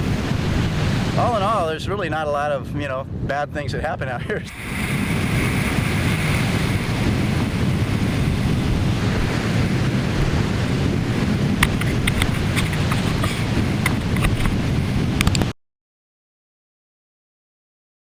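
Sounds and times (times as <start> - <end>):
wind buffeting microphone: 0.0 - 15.6
sharp crackles: 11.6 - 15.5.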